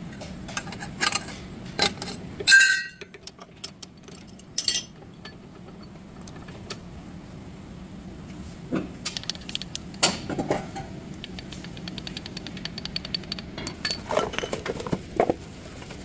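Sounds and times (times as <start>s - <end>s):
metal tools clinking and knocking: 0.5s - 6.6s, 12.8s - 14.9s
loud ringing metallic clink: 2.5s - 3.1s.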